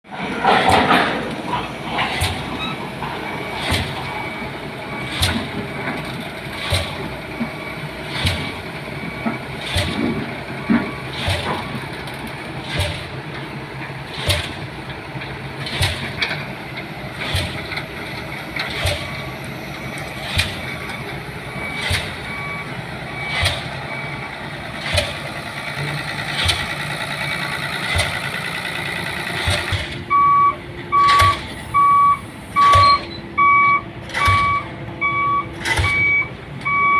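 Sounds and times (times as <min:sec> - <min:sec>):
crane engine running: 0:00.1 - 0:36.9
diesel pile hammer striking: 0:00.1 - 0:36.9
loud electronic beeping: 0:30.1 - 0:36.9.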